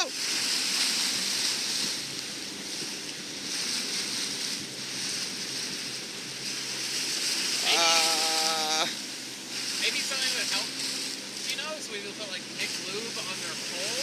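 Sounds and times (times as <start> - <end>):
wind buffeting microphone: 0.0 - 7.6
sea waves: 0.0 - 14.0
wind: 0.0 - 14.0.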